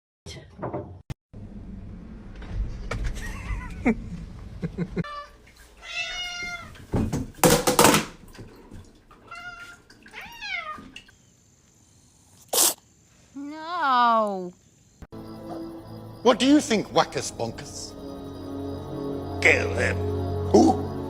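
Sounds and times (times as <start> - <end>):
knocking and rumbling: 0.3 - 5.0
cat meowing: 5.0 - 6.8, 9.3 - 11.0.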